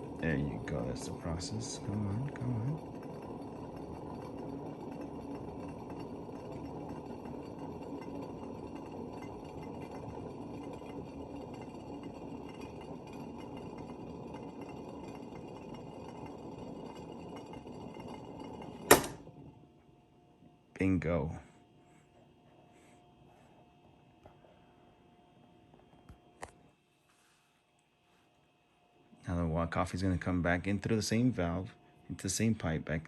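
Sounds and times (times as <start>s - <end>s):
water boiling with bubbling hiss: 0.0s - 19.6s, 29.3s - 33.0s
sharp metal clack: 18.9s - 19.2s.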